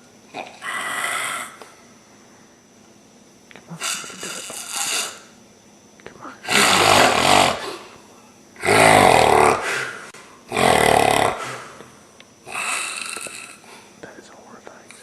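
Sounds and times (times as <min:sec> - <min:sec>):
person snoring: 0:00.3 - 0:01.6, 0:03.7 - 0:05.3, 0:06.4 - 0:08.0, 0:08.6 - 0:11.9, 0:12.5 - 0:13.9.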